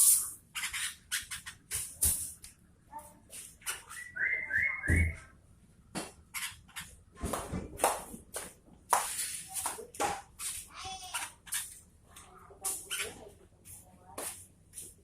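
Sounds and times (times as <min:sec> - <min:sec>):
rising whistled bird notes: 0:03.9 - 0:05.3.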